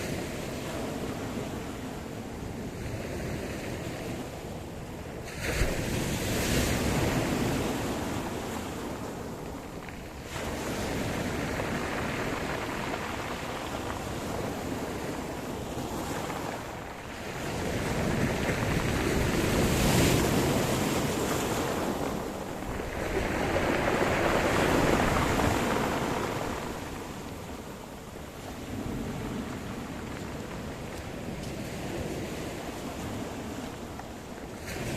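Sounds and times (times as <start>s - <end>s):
waves rolling in and breaking: 0.0s - 34.9s.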